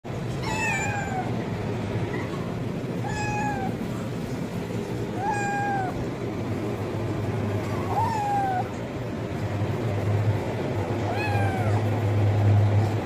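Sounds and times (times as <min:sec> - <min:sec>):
steady low rumble: 0:00.1 - 0:13.0
kitten meowing: 0:00.4 - 0:01.4, 0:03.0 - 0:03.9, 0:05.0 - 0:06.1, 0:07.7 - 0:08.8, 0:11.0 - 0:11.9.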